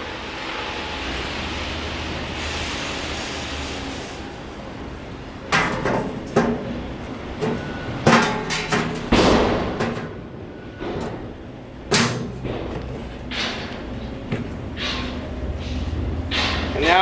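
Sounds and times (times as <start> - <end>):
metal panels scraping: 5.5 - 17.0
metal panels knocking: 7.4 - 15.2.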